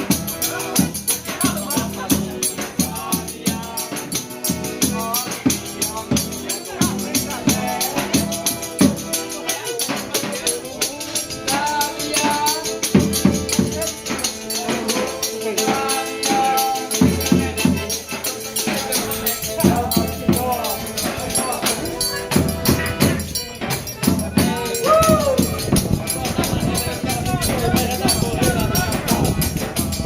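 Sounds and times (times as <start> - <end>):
accordion chords: 0.0 - 30.0
rattling shaker percussion: 0.0 - 30.0
low drum beat: 18.7 - 30.0.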